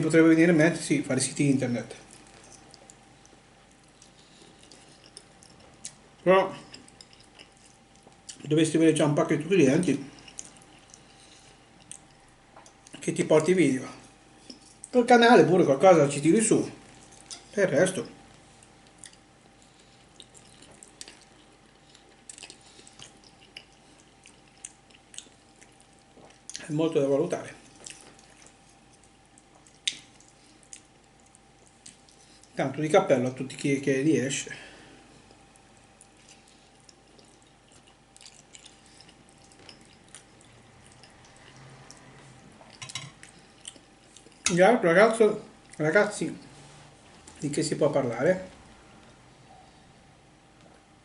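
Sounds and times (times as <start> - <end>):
faint steady hum: 0.0 - 51.0
soft wet chewing: 1.8 - 8.5, 9.8 - 15.0, 16.7 - 26.7, 27.4 - 32.6, 34.6 - 47.5
person eating spaghetti: 2.0 - 8.5, 9.9 - 13.0, 16.8 - 17.6, 18.3 - 26.6, 27.6 - 32.6, 35.2 - 44.5.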